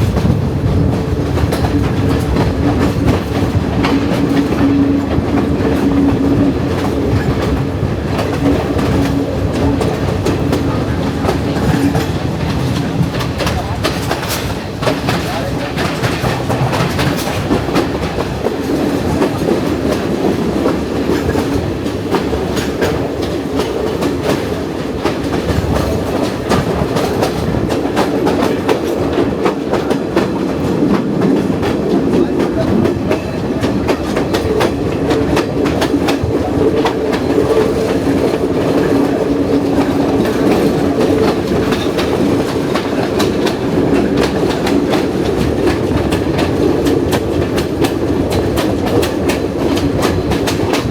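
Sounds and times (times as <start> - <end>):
train rumble: 0.0 - 50.9.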